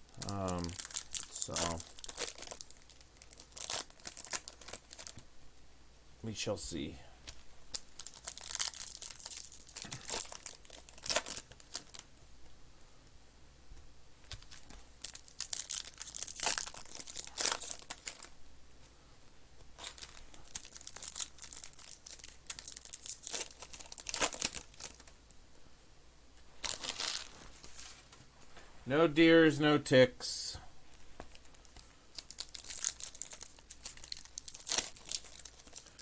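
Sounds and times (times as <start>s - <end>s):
foil wrappers tearing and crinkling: 0.1s - 5.2s, 7.7s - 12.0s, 14.3s - 18.3s, 19.8s - 25.2s, 26.6s - 28.1s, 31.3s - 36.0s.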